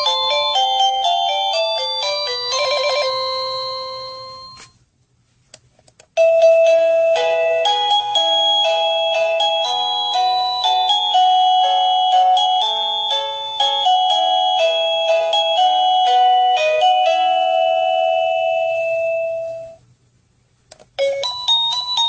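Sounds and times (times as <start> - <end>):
doorbell electronic melody: 0.0 - 4.8, 6.2 - 19.8, 21.0 - 22.0.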